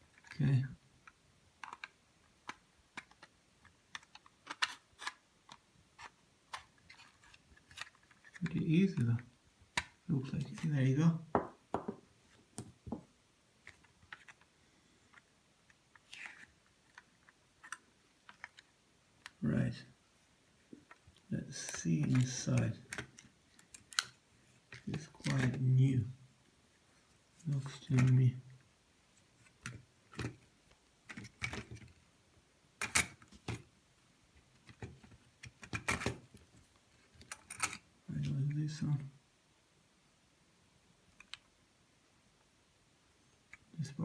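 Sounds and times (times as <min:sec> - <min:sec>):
plastic clicks: 0:01.0 - 0:10.7, 0:15.1 - 0:19.4, 0:20.7 - 0:25.6, 0:32.8 - 0:33.6, 0:34.6 - 0:37.8, 0:41.1 - 0:41.5.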